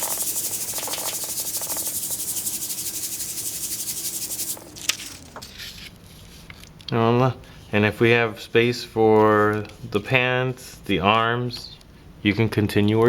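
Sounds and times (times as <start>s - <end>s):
hand rubbing paper: 0.0s - 5.8s.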